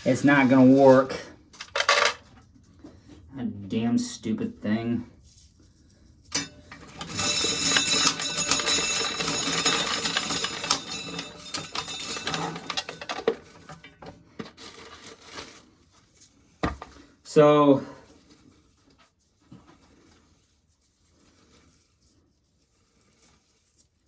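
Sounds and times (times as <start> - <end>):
corn kernels rattling in container: 6.4 - 13.7.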